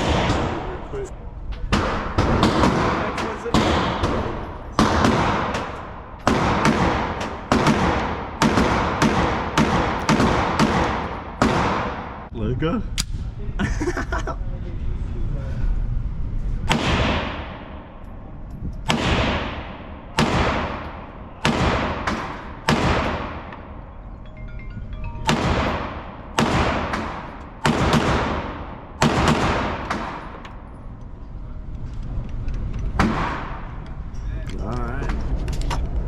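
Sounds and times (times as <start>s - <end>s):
gunshots echoing indoors: 0.0s - 1.0s, 1.7s - 12.3s, 16.7s - 23.9s, 25.2s - 30.7s, 32.9s - 33.8s.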